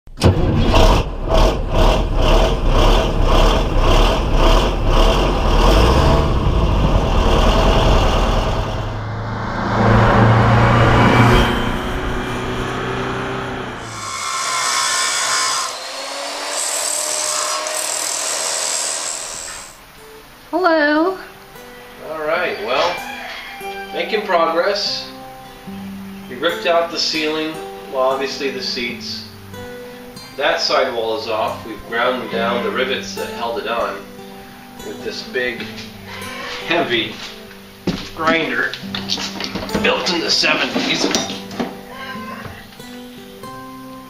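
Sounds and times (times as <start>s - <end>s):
power tool grinding: 0.3s - 8.9s, 11.0s - 19.9s.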